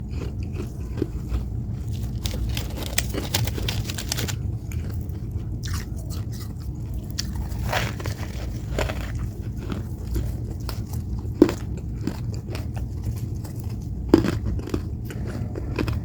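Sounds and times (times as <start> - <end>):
low rumble of chewing: 0.0 - 16.0
crisp crunches of biting frost: 1.8 - 4.4, 7.2 - 10.9.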